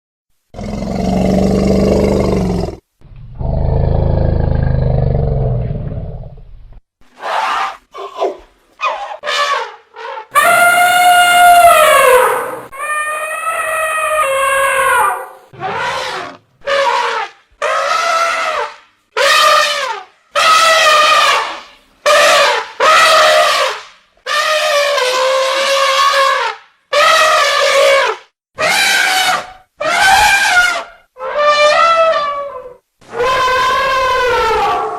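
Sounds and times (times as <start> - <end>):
elephant roaring: 0.6 - 6.3
elephant trumpeting: 7.2 - 34.9.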